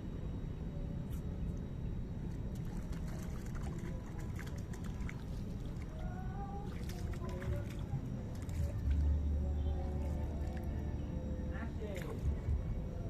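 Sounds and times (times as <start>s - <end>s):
steady low rumble: 0.0s - 13.0s
water trickling: 2.5s - 12.6s.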